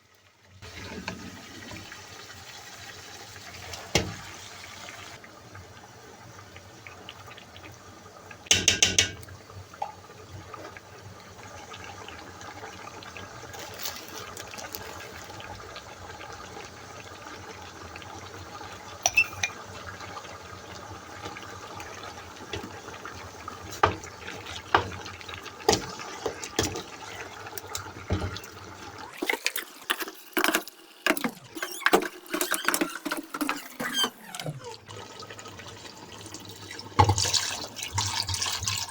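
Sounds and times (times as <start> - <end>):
dishes clattering: 8.5 - 9.2, 19.1 - 19.6
running water: 13.4 - 16.7, 18.6 - 38.9
utensils and dishes clinking: 19.0 - 19.6, 29.1 - 34.4.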